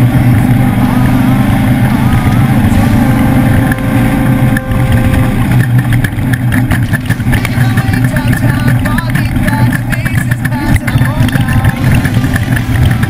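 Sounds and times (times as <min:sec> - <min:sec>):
race truck engine running hard: 0:00.0 - 0:13.0
steady whine: 0:00.0 - 0:13.0
sharp knocks and clatters: 0:05.4 - 0:13.0.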